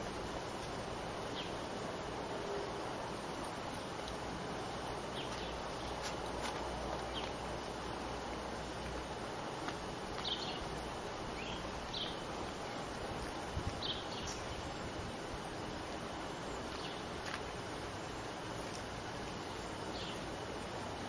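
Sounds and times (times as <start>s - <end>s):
steady outdoor hiss: 0.0s - 21.0s
small bird chirping: 5.1s - 6.0s, 10.2s - 12.8s, 13.8s - 14.8s, 19.3s - 20.4s.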